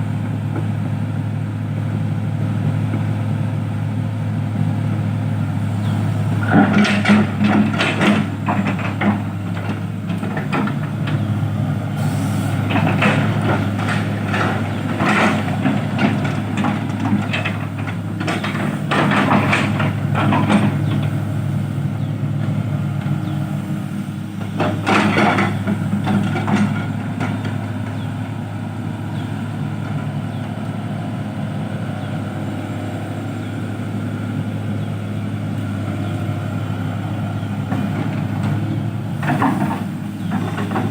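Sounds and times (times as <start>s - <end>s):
diesel engine running: 0.0s - 40.9s
rattling and clanking: 5.8s - 11.4s, 12.0s - 21.3s, 24.4s - 28.1s, 37.7s - 40.9s.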